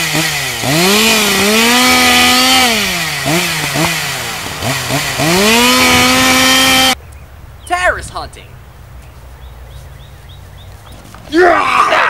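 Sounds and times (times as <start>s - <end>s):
chainsaw engine revving: 0.0s - 7.7s.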